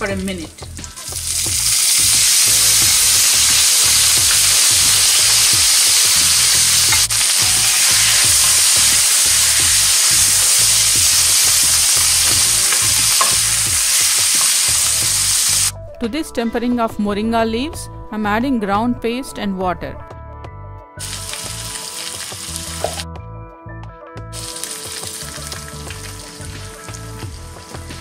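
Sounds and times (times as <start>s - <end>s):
leaves sizzling in hot oil: 1.0s - 15.7s, 21.0s - 23.0s, 24.4s - 28.0s.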